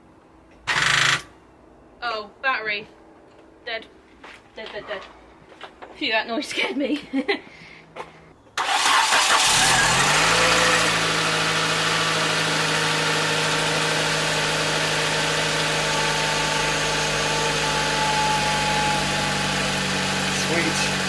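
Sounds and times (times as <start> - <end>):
car engine idling: 8.6 - 21.0.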